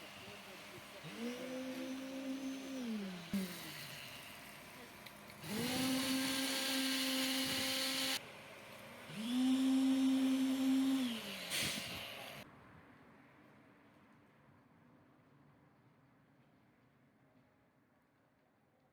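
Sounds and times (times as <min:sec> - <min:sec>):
small electric motor whirring: 0:00.0 - 0:08.2, 0:09.1 - 0:12.4.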